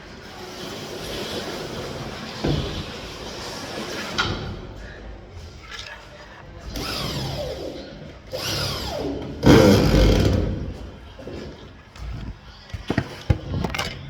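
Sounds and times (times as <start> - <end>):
power drill running: 8.3 - 10.4.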